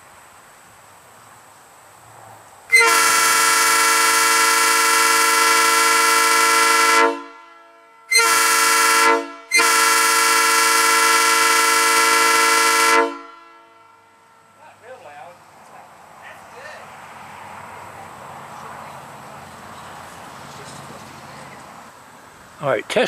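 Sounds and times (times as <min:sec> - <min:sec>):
train air horn chord: 0:02.7 - 0:14.6.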